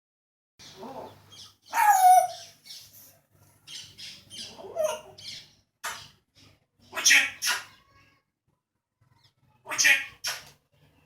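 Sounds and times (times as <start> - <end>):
parrot squawking: 1.7 - 2.5, 3.8 - 6.1, 6.9 - 7.8, 9.6 - 10.5.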